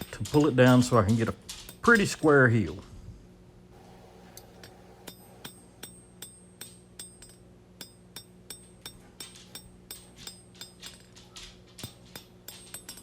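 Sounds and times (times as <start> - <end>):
hammer striking steel on anvil: 4.6 - 10.8.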